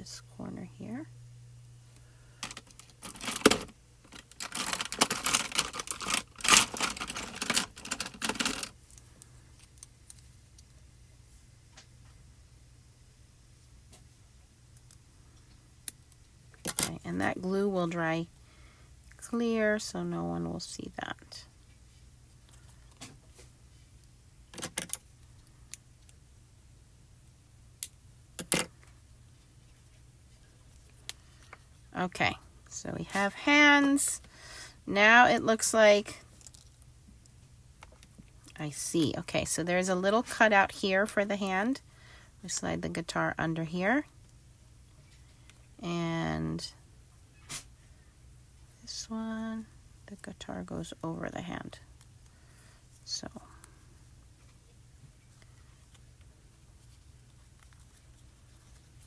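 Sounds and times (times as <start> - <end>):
paper rustling: 2.4 - 8.7.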